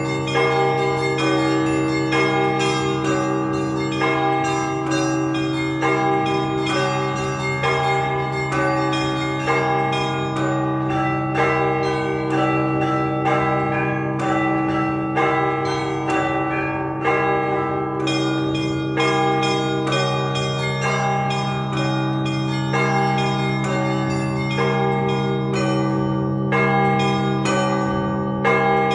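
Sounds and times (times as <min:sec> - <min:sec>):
high church bells striking: 0:00.0 - 0:28.9
hum of large bells: 0:00.0 - 0:28.9.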